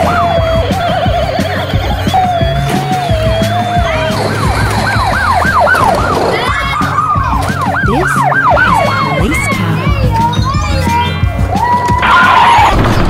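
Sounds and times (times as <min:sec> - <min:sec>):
steady wavering siren: 0:00.0 - 0:09.8
rapidly sweeping siren: 0:00.0 - 0:09.9.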